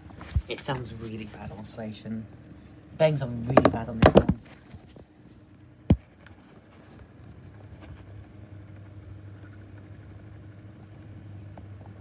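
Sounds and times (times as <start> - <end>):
desk fan motor hum: 7.2 - 12.0.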